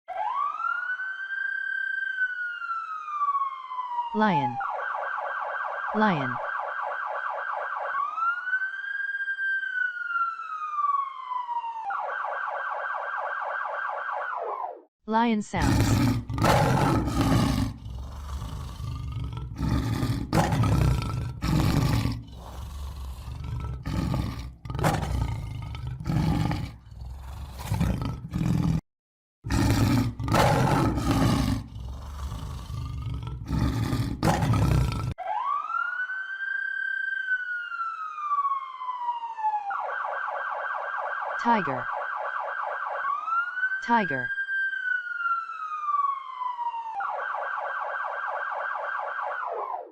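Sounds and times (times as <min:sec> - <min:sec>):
lion roaring and grunting: 0:15.6 - 0:28.8, 0:29.5 - 0:35.2.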